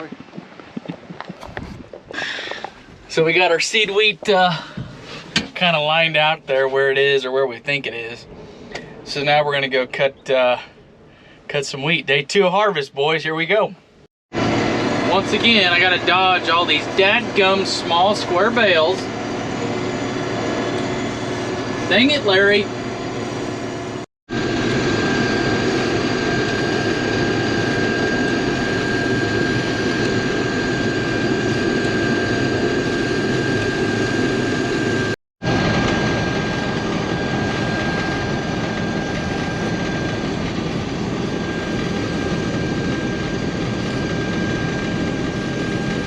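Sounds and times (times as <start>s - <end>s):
combine harvester drone: 14.4s - 46.0s
high whine: 14.4s - 46.0s.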